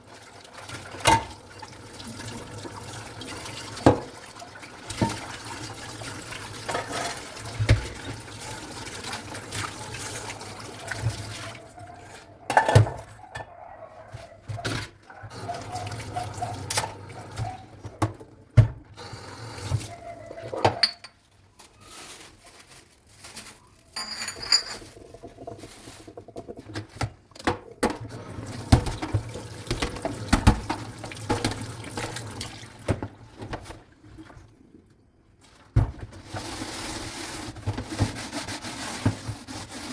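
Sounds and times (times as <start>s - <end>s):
water running from tap: 0.0s - 12.2s, 15.3s - 20.6s, 24.0s - 33.3s
dishes clinking: 20.6s - 21.2s, 24.0s - 25.4s.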